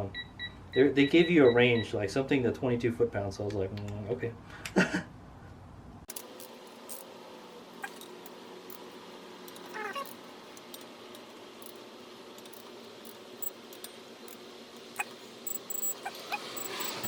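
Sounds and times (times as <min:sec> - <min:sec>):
cat meowing: 0:09.7 - 0:10.1.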